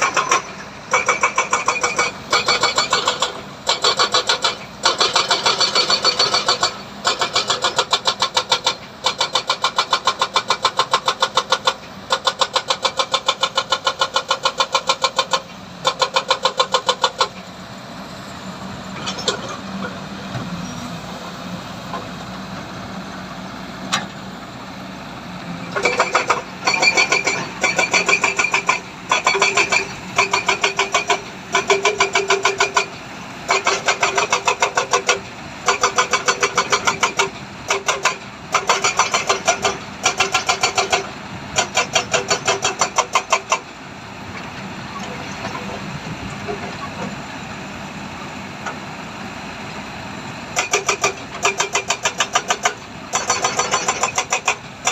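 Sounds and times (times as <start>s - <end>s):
engine running: 0.0s - 54.9s
rapid mechanical clatter: 25.7s - 43.7s, 50.6s - 54.9s.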